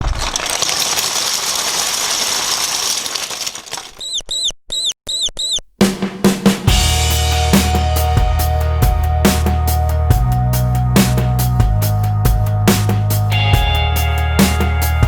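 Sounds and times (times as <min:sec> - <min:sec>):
drum-led music: 0:05.8 - 0:15.0.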